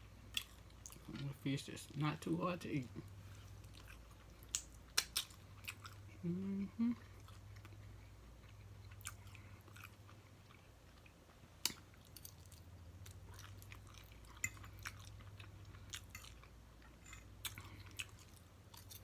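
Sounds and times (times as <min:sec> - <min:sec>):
faint low hum: 0:00.0 - 0:19.0
chewing and mouth smacks: 0:03.4 - 0:06.2, 0:07.0 - 0:19.0.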